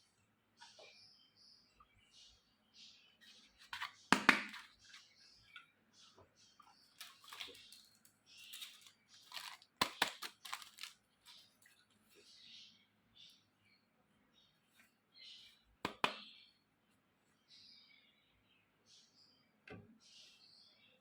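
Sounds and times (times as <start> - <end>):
small plastic pieces clicking: 7.0 - 11.4
packaging rustling: 7.0 - 11.6.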